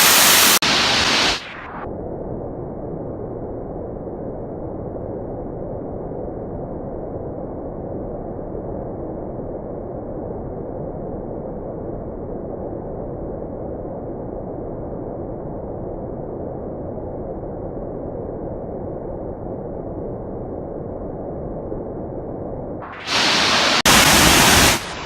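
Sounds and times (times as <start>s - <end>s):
loud hiss: 0.0s - 1.5s, 22.9s - 25.0s
muffled rushing water: 0.0s - 1.8s, 22.8s - 25.0s.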